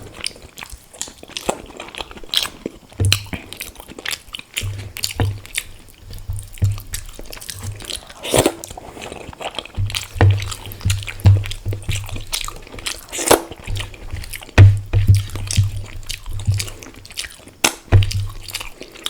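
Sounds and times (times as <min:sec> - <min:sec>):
person chewing food: 0:00.0 - 0:19.0
soft low jaw thumps: 0:04.6 - 0:08.1, 0:09.7 - 0:18.8
wet mouth clicks and smacks: 0:15.1 - 0:19.0.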